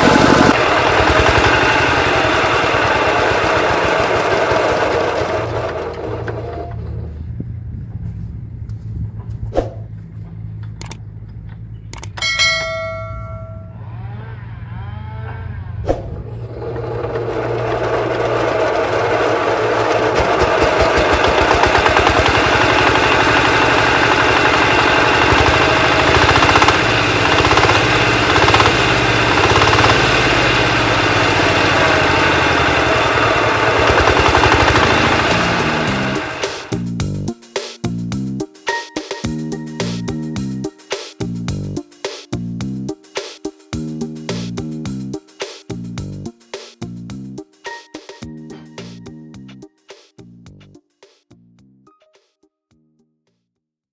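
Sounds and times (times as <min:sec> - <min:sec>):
tractor engine: 0:00.0 - 0:37.2
metallic clank: 0:10.2 - 0:13.8.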